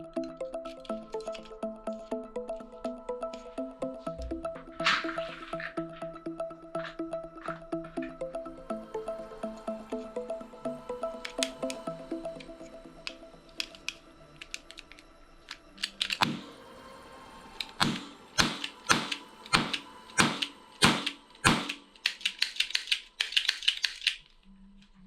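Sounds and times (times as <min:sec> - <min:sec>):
sharp clicks: 0:11.2 - 0:16.5, 0:17.6 - 0:24.3.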